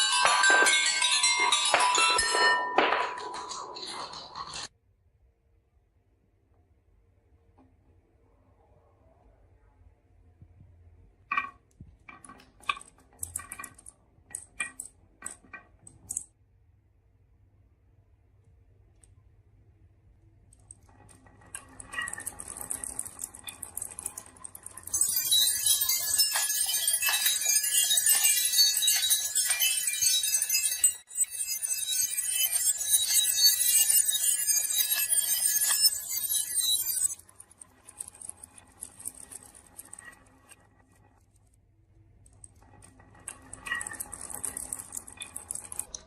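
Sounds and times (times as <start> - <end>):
marbles clattering down wooden run: 0.0 - 4.7, 20.8 - 41.2, 42.4 - 46.0.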